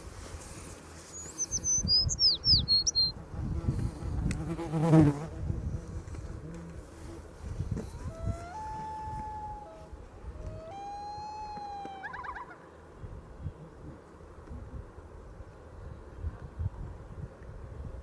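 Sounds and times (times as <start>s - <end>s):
songbird chirps: 1.0s - 3.2s
flying insect buzzing: 3.1s - 7.4s.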